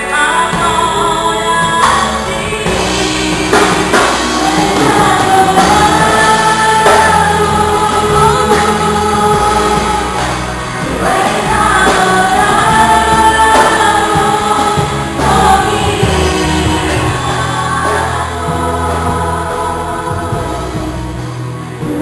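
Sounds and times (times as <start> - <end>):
band accompaniment with bass: 0.0 - 22.0
group singing together: 0.0 - 22.0.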